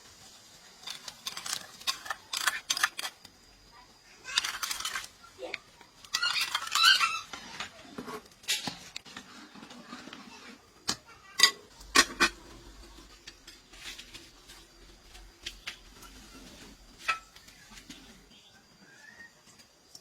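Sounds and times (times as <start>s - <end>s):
dishes and utensils clinking: 10.9s - 12.6s, 17.0s - 17.4s.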